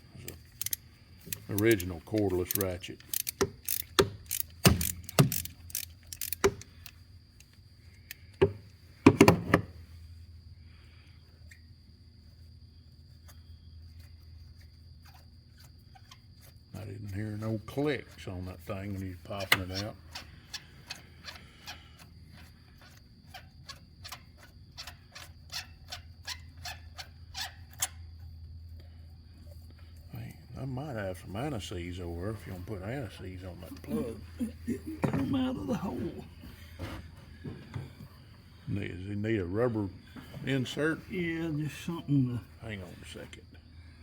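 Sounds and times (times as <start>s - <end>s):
ratchet clicking: 0.3s - 7.0s.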